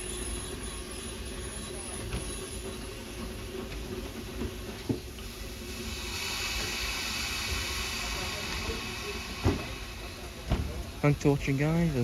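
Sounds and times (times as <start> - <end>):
steam locomotive hissing: 0.0 - 12.0.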